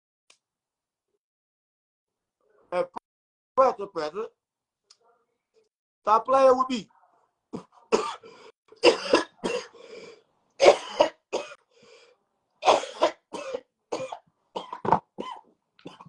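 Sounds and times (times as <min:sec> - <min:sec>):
man coughing hard: 0:07.6 - 0:08.2, 0:08.8 - 0:09.8, 0:10.6 - 0:11.6, 0:12.6 - 0:16.0.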